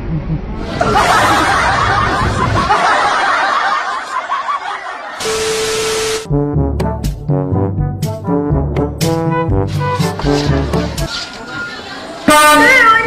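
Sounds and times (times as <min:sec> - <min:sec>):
many voices laughing: 0:00.6 - 0:05.2, 0:11.1 - 0:12.3
steady horn tone with hiss: 0:05.2 - 0:06.3.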